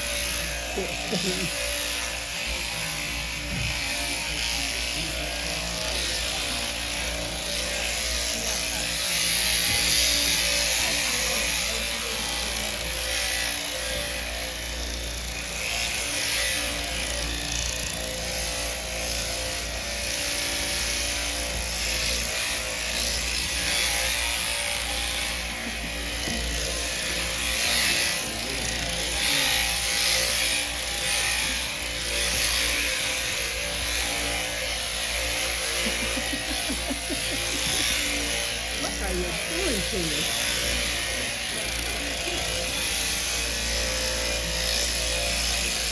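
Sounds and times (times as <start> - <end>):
shearing handpiece humming: 0.0 - 45.9
comb rasping through fleece: 29.0 - 45.9.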